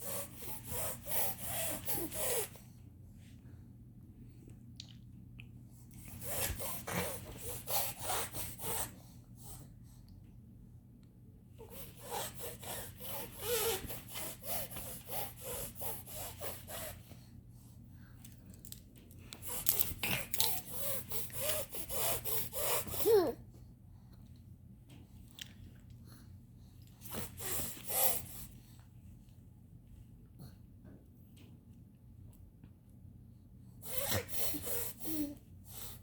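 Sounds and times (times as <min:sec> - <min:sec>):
baby breathing rapidly: 0:00.0 - 0:02.6, 0:06.1 - 0:09.6, 0:11.6 - 0:17.2, 0:19.4 - 0:23.4, 0:27.0 - 0:28.6, 0:33.8 - 0:36.0
baby voiced sounds: 0:22.9 - 0:23.4.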